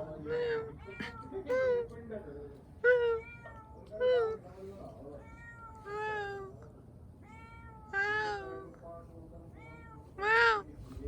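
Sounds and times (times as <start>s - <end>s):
cat meowing: 9.6s - 10.7s.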